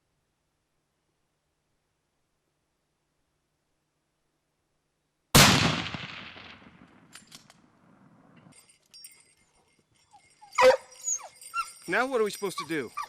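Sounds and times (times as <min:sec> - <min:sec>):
rifle shot: 0:05.3 - 0:08.4.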